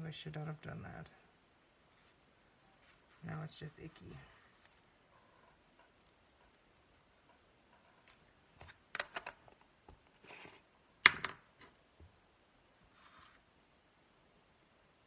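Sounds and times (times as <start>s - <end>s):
soft brushing sounds: 1.8s - 7.0s, 12.7s - 13.7s.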